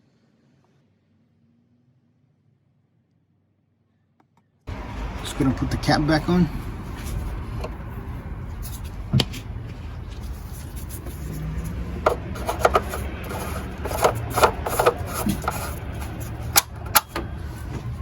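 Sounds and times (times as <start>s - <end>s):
hands rubbing on plastic: 6.9s - 16.6s
oil cap clicking and tapping: 7.6s - 7.8s, 11.9s - 17.3s.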